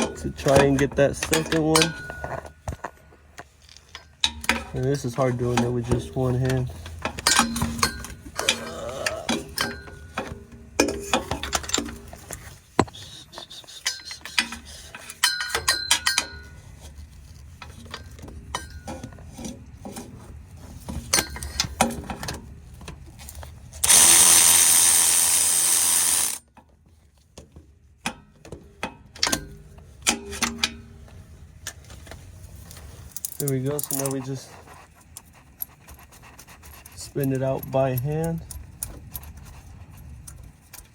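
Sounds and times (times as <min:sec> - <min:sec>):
hand tools clinking on metal: 0:00.0 - 0:02.6, 0:03.8 - 0:12.1, 0:13.8 - 0:16.6
power tool running: 0:23.8 - 0:26.4
ratchet clicks: 0:23.8 - 0:26.4.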